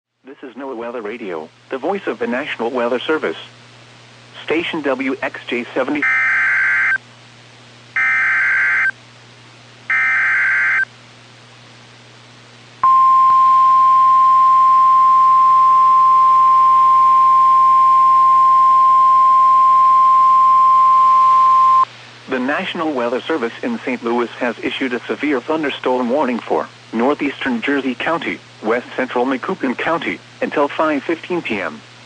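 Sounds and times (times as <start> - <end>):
buzzing data tone bursts: 6.0 - 7.0, 8.0 - 9.0, 9.9 - 10.9
steady alarm tone: 6.0 - 7.0, 8.0 - 8.9, 9.9 - 10.9, 12.8 - 21.9.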